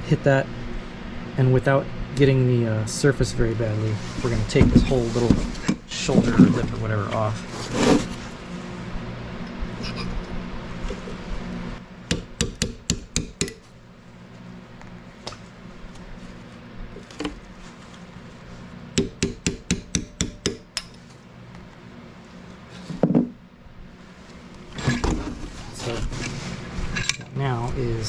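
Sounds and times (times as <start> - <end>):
hammer tapping metal punch: 12.1 - 13.6, 19.0 - 21.0.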